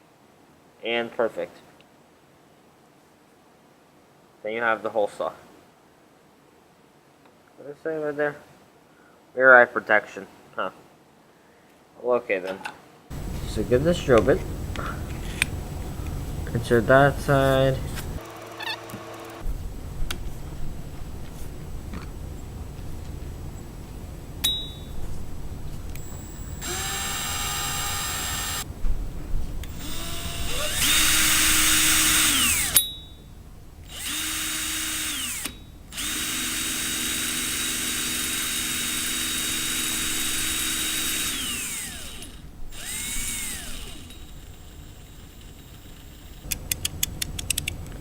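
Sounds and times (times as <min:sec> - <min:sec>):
power drill whining: 0:13.1 - 0:23.6, 0:24.9 - 0:28.7, 0:29.6 - 0:46.4.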